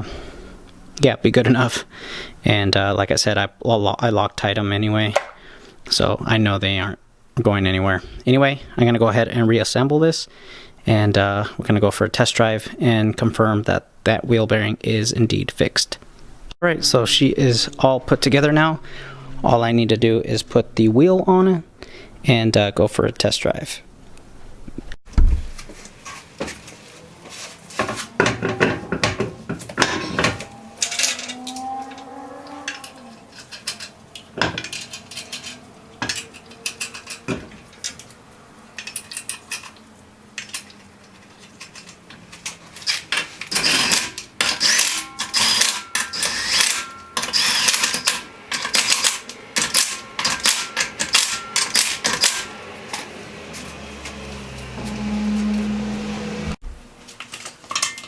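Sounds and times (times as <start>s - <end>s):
metal tools and car parts clanking: 27.8s - 56.0s, 57.2s - 58.0s.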